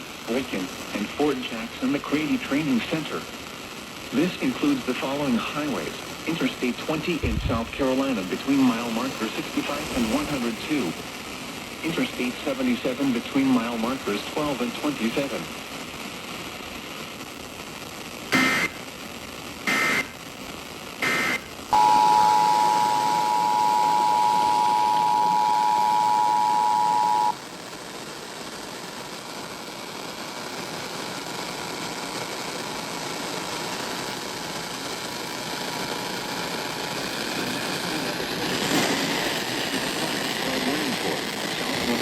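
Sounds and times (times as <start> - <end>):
radio static hiss: 0.0 - 42.0
buzzing data bursts: 18.3 - 18.8, 19.6 - 20.2, 21.0 - 27.4
two-tone attention signal: 21.8 - 27.3.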